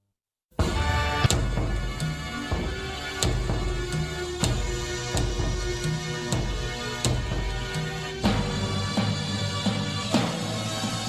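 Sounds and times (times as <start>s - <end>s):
sharp percussive hits: 0.6s - 2.8s
dark music with held tones: 0.6s - 11.0s.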